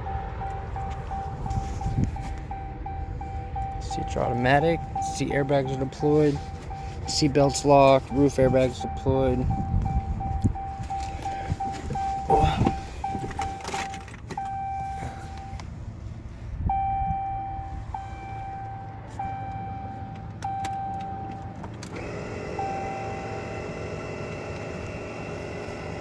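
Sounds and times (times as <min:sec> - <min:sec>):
dashboard warning chime beeping: 0:00.0 - 0:15.8, 0:16.7 - 0:26.0
ignition key jingling: 0:00.2 - 0:15.7.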